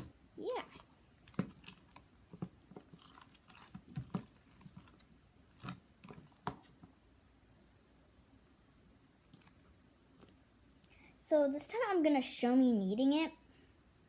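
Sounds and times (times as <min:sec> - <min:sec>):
slime squelching: 0:00.0 - 0:07.0, 0:09.1 - 0:10.5.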